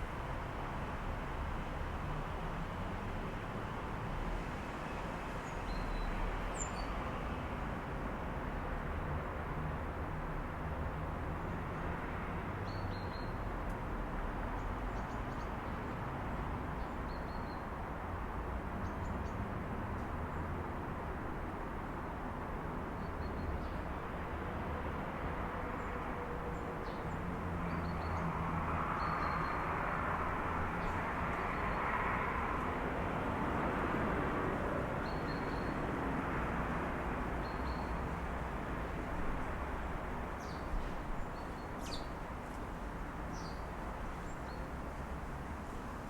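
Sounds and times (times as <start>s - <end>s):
traffic hum: 23.6s - 46.0s.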